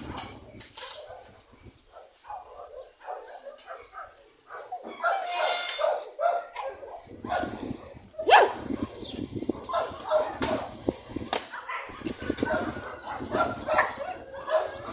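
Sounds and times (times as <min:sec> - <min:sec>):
dogs barking: 0:00.0 - 0:14.9.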